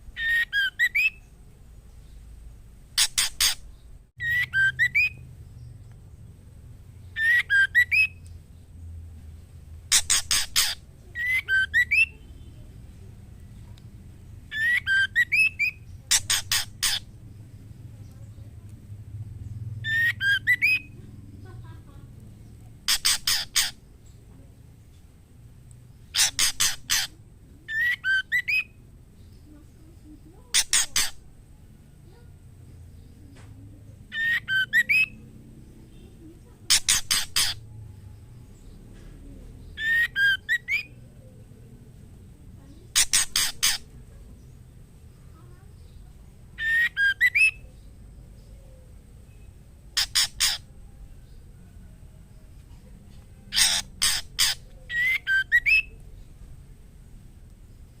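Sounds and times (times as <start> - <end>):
bird whistled phrase: 0.2 - 1.2, 4.2 - 5.2, 7.2 - 8.2, 10.6 - 12.3, 14.5 - 15.8, 19.8 - 20.9, 27.7 - 28.8, 34.1 - 35.2, 39.8 - 41.0, 46.6 - 47.6, 54.4 - 56.0
bird harsh rasping notes: 0.2 - 1.3, 2.9 - 5.2, 7.1 - 8.2, 9.8 - 12.7, 14.5 - 17.6, 19.5 - 21.1, 22.8 - 24.0, 25.9 - 28.8, 30.4 - 31.4, 34.1 - 35.3, 35.9 - 37.7, 39.7 - 41.0, 42.8 - 44.1, 46.6 - 47.6, 49.2 - 50.8, 53.4 - 56.0.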